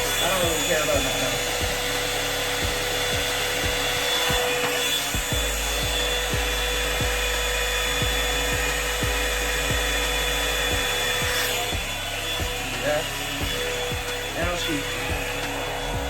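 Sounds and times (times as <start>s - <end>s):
hair dryer blowing: 0.0s - 16.0s
low bass thump: 2.6s - 4.6s, 5.2s - 12.8s.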